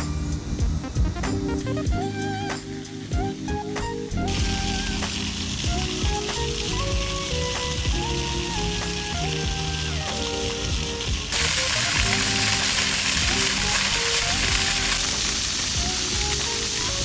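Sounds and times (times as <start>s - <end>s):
simple stepping melody: 0.7s - 17.0s
steady high hiss: 1.7s - 17.0s.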